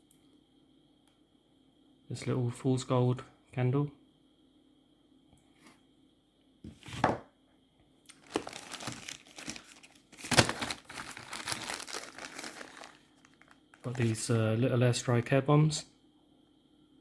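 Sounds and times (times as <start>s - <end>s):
packaging crinkling and rustling: 8.1s - 14.3s.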